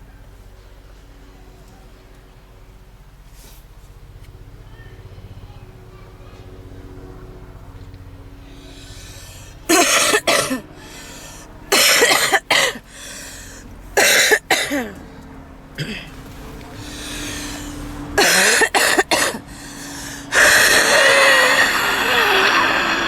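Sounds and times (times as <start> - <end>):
woman coughing harshly: 9.7 - 11.1, 11.7 - 12.9, 14.0 - 15.0, 15.8 - 16.1, 18.2 - 23.0.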